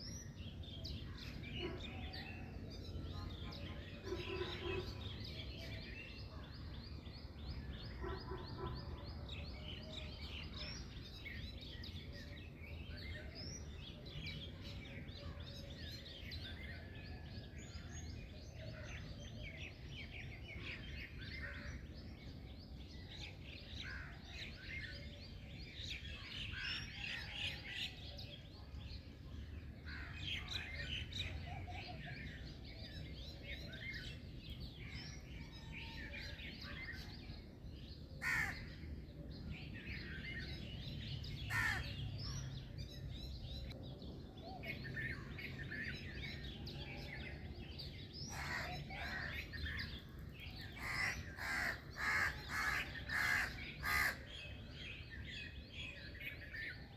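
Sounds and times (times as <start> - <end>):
birds chirping and singing: 0.0 - 56.9
sharp bird calls: 41.4 - 42.0, 48.3 - 54.7.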